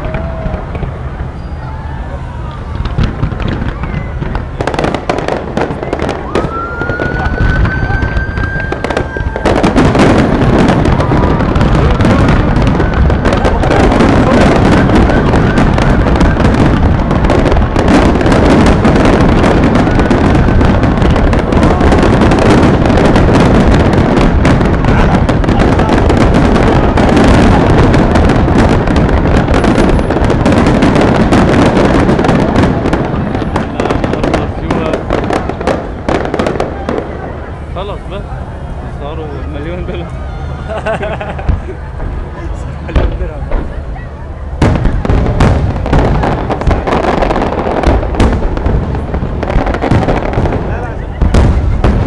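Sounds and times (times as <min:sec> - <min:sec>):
whistling firework shell: 0:00.0 - 0:05.0, 0:05.6 - 0:16.8
firework bangs and crackling: 0:00.0 - 0:52.0.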